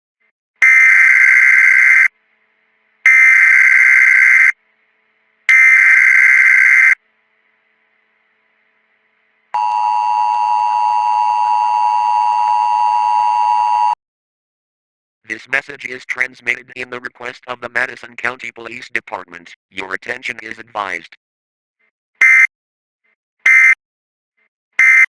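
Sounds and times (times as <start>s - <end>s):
two-tone attention signal: 9.6s - 14.0s.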